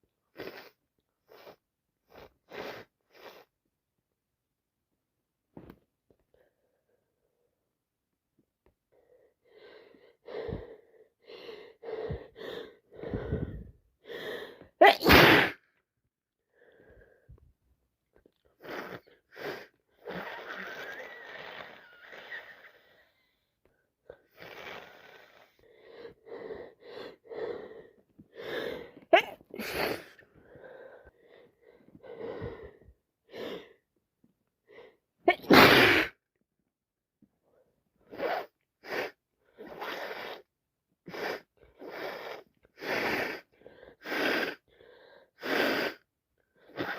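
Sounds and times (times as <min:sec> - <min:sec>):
woman sneezing: 0:14.8 - 0:15.6, 0:29.1 - 0:30.2, 0:35.3 - 0:36.2.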